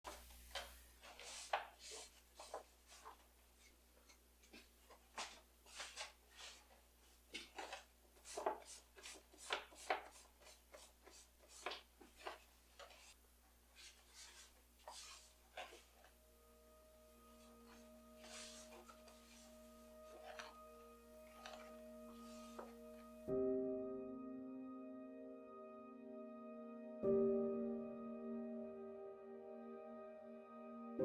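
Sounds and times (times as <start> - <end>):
hands rustling and scraping things: 0.1 - 16.2, 17.2 - 23.3.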